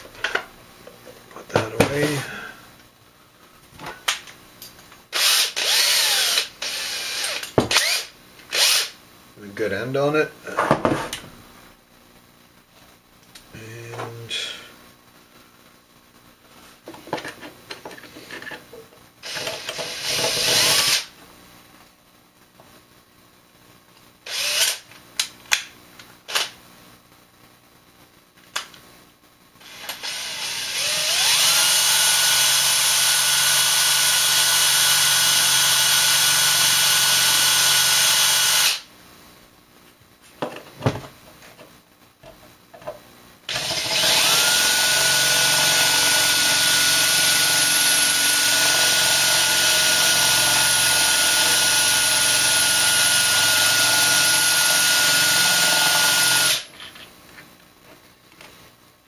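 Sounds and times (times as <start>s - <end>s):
electric drill whining: 5.1s - 9.0s, 19.2s - 21.1s, 24.3s - 24.8s, 29.6s - 38.9s, 43.5s - 56.7s
drill clicks: 5.2s - 8.9s.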